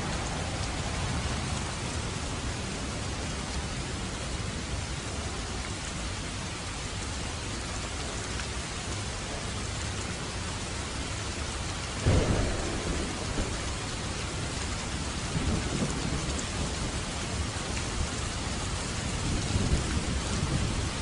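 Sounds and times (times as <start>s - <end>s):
heavy rain: 0.0s - 21.0s
thunder rumbling: 12.0s - 21.0s.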